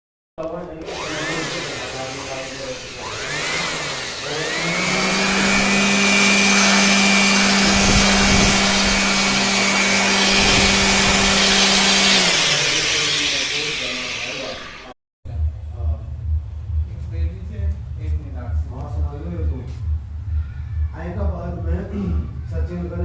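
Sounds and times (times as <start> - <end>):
motor-driven machine humming: 0.7 - 15.0
noisy rush: 0.8 - 20.6
high whine: 0.9 - 17.6.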